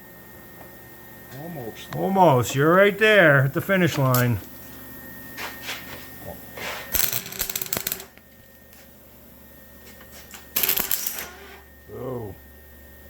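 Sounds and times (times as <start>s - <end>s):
welding arc crackling: 6.9s - 8.2s.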